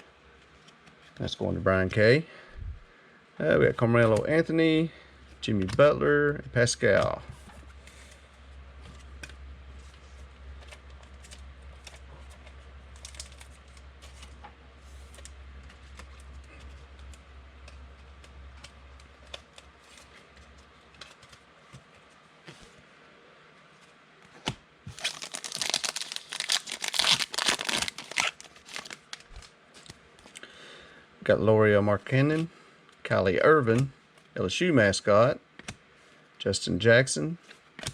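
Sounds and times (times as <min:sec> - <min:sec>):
low hum: 0:02.4 - 0:03.2
cards clicking and rustling: 0:10.6 - 0:22.7, 0:24.3 - 0:30.4
plastic wrapper crinkling and tearing: 0:24.9 - 0:30.0.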